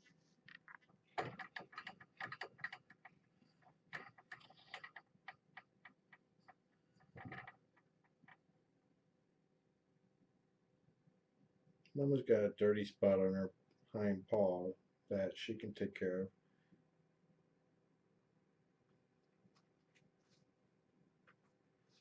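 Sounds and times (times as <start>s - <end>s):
quiet clicks and taps: 0.4s - 8.5s, 21.2s - 22.0s.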